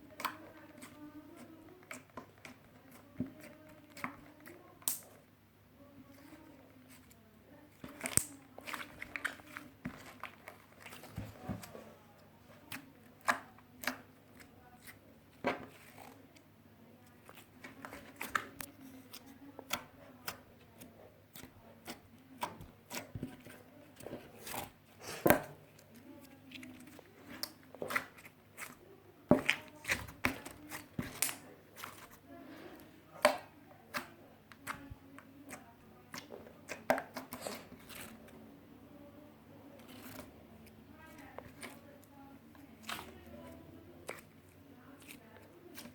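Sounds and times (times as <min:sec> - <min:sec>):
slime squishing with pops: 0:00.1 - 0:05.2, 0:07.7 - 0:11.6, 0:12.7 - 0:16.4, 0:33.1 - 0:38.2, 0:39.8 - 0:45.9.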